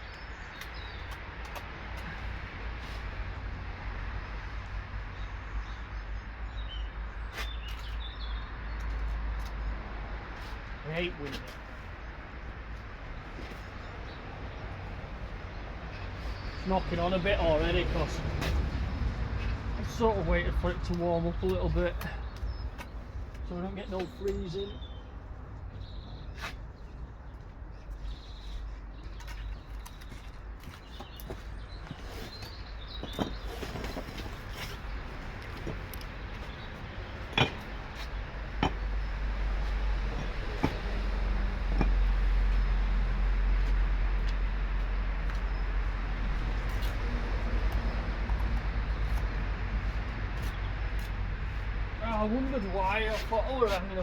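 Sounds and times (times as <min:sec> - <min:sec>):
small birds chirping: 0:00.0 - 0:02.4, 0:05.1 - 0:09.8, 0:10.4 - 0:41.0
low outdoor rumble: 0:27.0 - 0:54.0.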